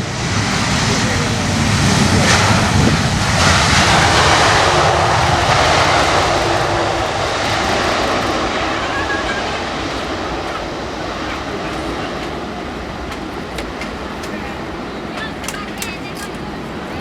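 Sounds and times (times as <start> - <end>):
airliner engines passing: 0.0 - 17.0.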